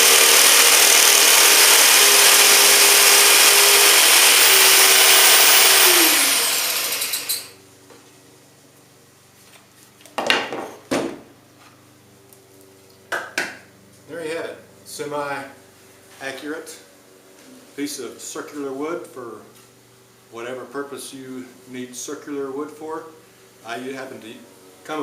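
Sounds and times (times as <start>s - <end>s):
jigsaw cutting plywood: 0.0s - 7.5s
saw motor winding down: 0.0s - 7.6s.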